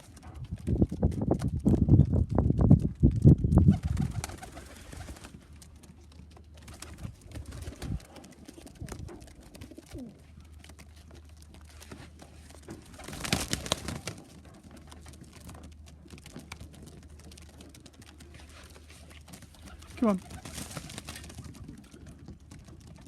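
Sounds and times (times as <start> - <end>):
pigeons cooing: 6.6 - 10.6.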